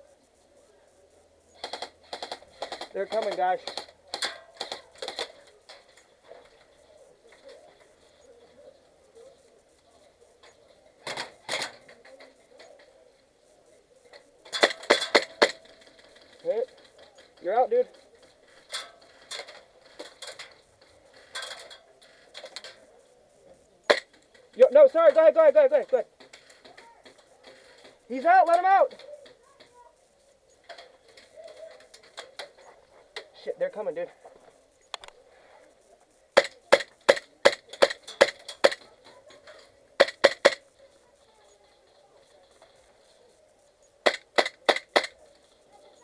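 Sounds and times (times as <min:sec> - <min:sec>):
airsoft gunfire: 0:01.6 - 0:05.5, 0:14.5 - 0:16.4, 0:23.9 - 0:25.2, 0:36.4 - 0:39.0, 0:39.6 - 0:40.7, 0:44.0 - 0:45.2
pellets striking hard surfaces: 0:01.6 - 0:05.9, 0:14.5 - 0:21.8, 0:36.4 - 0:38.9, 0:39.5 - 0:40.6, 0:44.0 - 0:45.2
airsoft gun shots: 0:14.5 - 0:15.9, 0:40.0 - 0:40.6, 0:44.0 - 0:45.2.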